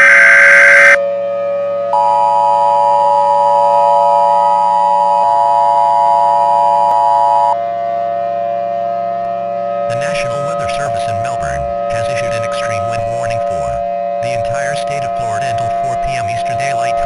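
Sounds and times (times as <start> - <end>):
harsh digital data burst: 0.0 - 1.0
two-tone attention signal: 0.0 - 1.0, 2.0 - 7.6, 9.9 - 17.0
low hum: 0.0 - 1.1, 9.2 - 17.0
siren-like drone: 0.0 - 17.0.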